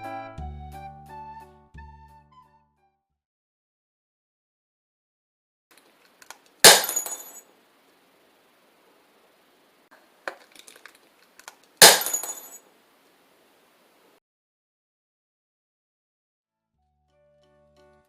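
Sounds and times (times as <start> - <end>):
small clinks: 6.0 - 7.4, 10.3 - 12.6
glass breaking crash: 6.6 - 7.4, 11.8 - 12.6
glass tinkling rattle: 6.7 - 7.4, 11.9 - 12.6.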